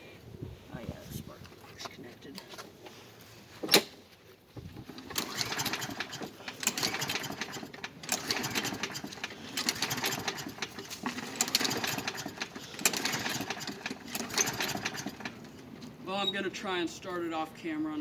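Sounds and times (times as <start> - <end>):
mower engine turning over: 3.6 - 4.0, 4.6 - 16.5
starter cord pulls: 3.6 - 4.0, 4.6 - 16.4.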